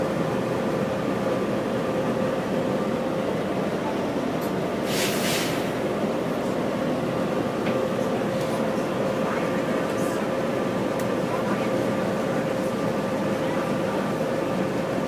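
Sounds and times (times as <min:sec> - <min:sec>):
burst of hiss: 0:04.8 - 0:05.7.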